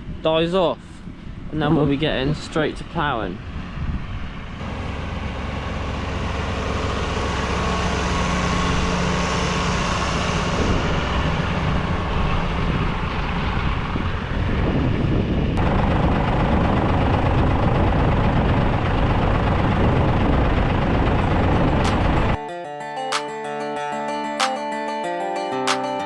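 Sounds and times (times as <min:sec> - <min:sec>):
dense noisy rush: 0:00.0 - 0:22.4
tractor engine running: 0:04.3 - 0:22.4.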